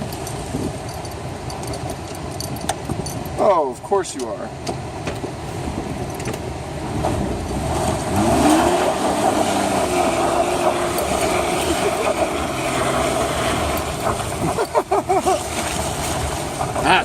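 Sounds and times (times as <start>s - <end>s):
truck engine revving: 5.4s - 17.0s.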